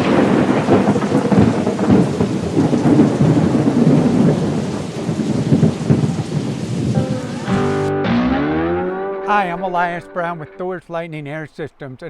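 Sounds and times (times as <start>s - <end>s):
steady rain: 0.0s - 7.9s
thunder rumbling: 0.0s - 8.9s.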